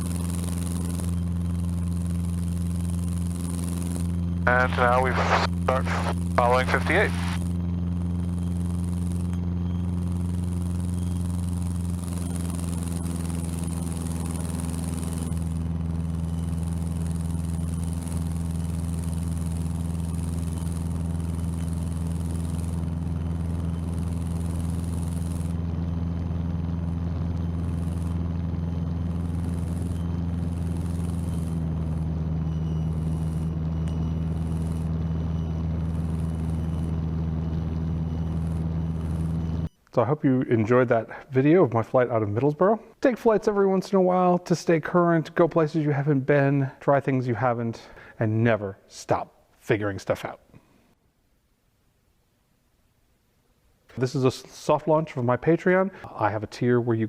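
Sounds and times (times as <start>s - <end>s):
small plane engine droning in cabin: 0.0s - 39.8s.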